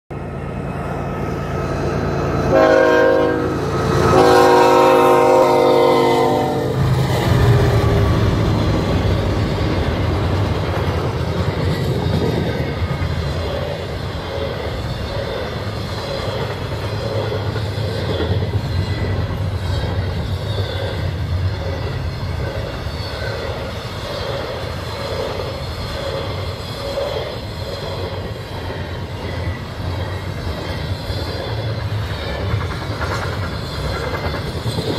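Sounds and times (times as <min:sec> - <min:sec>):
train rumbling by: 0:00.1 - 0:34.9
train horn: 0:02.3 - 0:08.4
wheels clicking over rail joints: 0:08.7 - 0:34.9.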